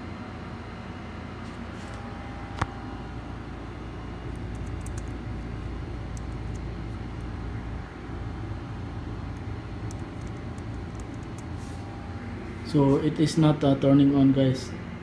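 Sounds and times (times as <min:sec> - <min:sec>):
low hum: 0:01.8 - 0:13.1.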